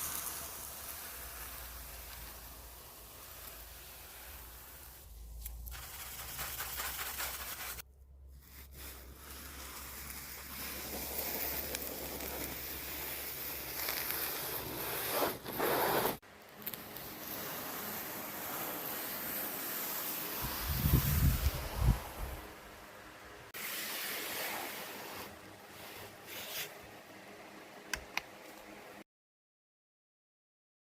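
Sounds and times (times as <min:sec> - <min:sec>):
scrubbing keyboard cleaning: 0:05.7 - 0:07.8.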